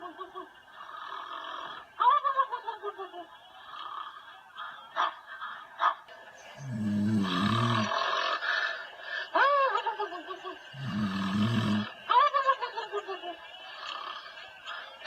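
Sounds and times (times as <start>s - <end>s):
loud snoring: 0.8s - 1.9s, 6.6s - 8.8s, 10.7s - 12.0s
whine on the breath out: 3.5s - 9.8s, 10.5s - 12.1s, 13.5s - 15.0s.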